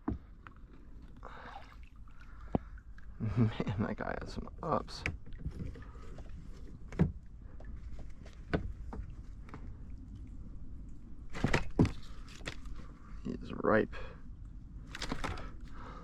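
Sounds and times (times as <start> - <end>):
knocks and thunks on a kayak: 0.0 - 0.4, 4.9 - 9.8, 11.3 - 12.7
low steady rumble: 0.0 - 16.0.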